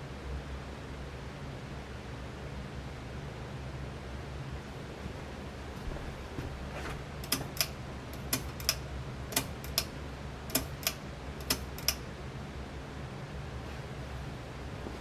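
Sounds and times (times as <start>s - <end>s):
ceiling fan motor humming: 0.1s - 15.0s
sharp ticking clicks: 7.2s - 9.9s, 10.5s - 12.0s.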